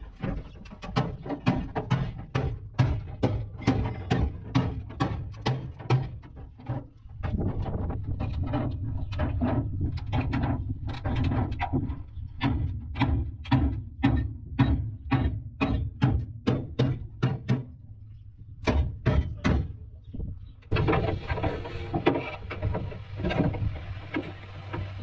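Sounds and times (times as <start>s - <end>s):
workshop noise: 18.6s - 25.0s.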